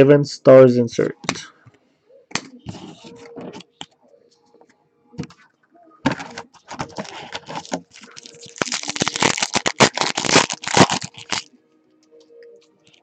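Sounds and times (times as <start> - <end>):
foil wrapper tearing and crinkling: 6.7 - 11.5.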